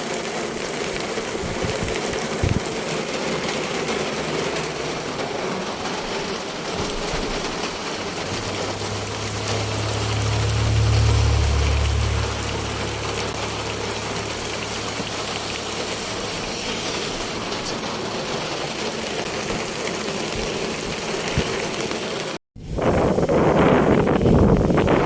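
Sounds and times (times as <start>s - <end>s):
steady rain falling: 0.0s - 22.4s
low rumble: 7.8s - 17.6s.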